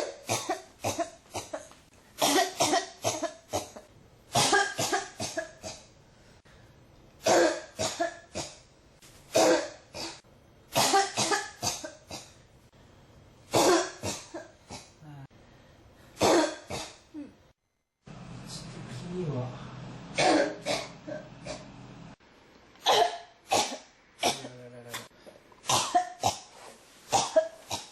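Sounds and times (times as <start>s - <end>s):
person coughing: 0.0s - 5.9s, 7.2s - 8.6s, 9.3s - 10.2s, 10.8s - 12.4s, 13.5s - 15.2s, 16.2s - 17.3s, 20.2s - 21.6s, 22.8s - 24.6s, 25.7s - 26.5s, 27.1s - 27.9s.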